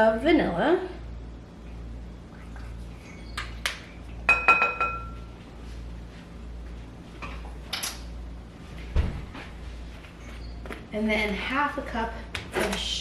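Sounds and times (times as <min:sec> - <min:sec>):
metal spoon clinking against bowl: 0:04.3 - 0:05.2.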